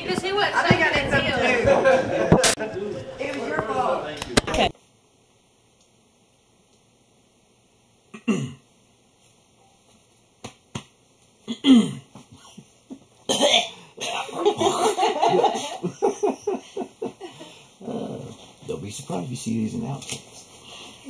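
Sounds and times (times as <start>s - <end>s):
person coughing: 8.2s - 8.6s, 11.5s - 12.1s, 13.3s - 14.4s
person laughing: 14.1s - 17.5s.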